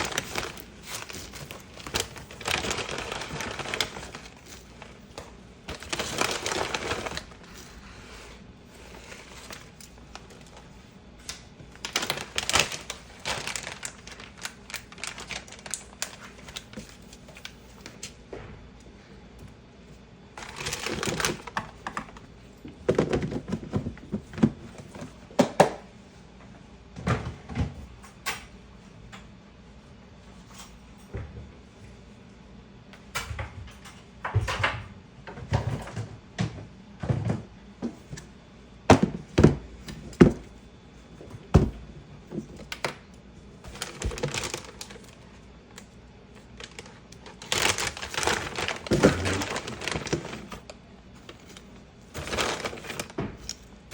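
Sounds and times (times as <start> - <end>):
rustling of dried herbs: 11.7 - 16.5.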